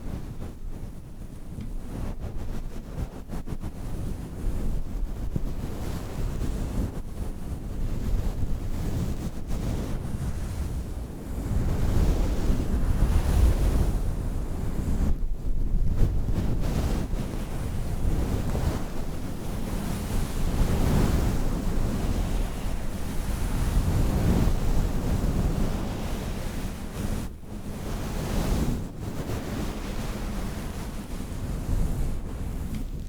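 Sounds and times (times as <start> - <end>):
loud rushing noise on microphone: 8.0 - 33.0.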